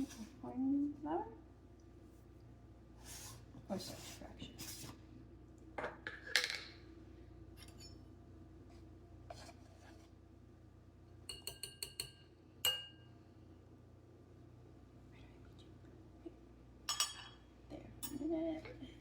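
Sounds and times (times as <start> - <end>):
spoon tapping a bowl: 11.2 - 13.1.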